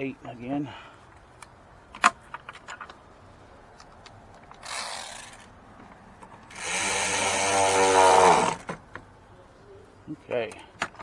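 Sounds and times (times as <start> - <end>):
cordless power tool whining: 4.6 - 5.5, 6.5 - 8.8.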